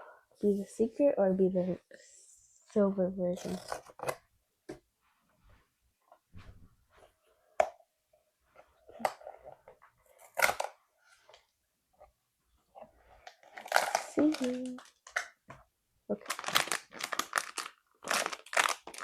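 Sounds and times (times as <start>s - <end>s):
plastic packaging crinkling: 13.3s - 15.3s, 16.1s - 19.0s.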